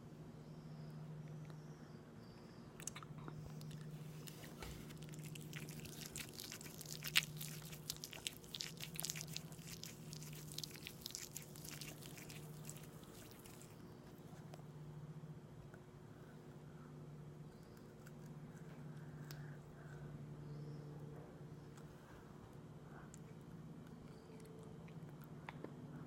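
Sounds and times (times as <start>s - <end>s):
steady low hum: 0.0s - 26.0s
wet mouth chewing clicks: 2.8s - 13.8s.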